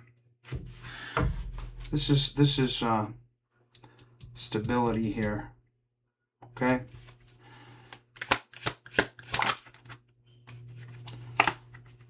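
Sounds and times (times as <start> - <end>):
cards being shuffled: 6.9 - 12.0
card snaps and slaps: 8.2 - 9.9.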